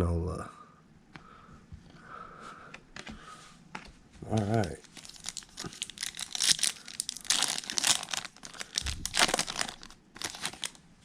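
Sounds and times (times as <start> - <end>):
foil wrapper tearing and crinkling: 4.5 - 10.8.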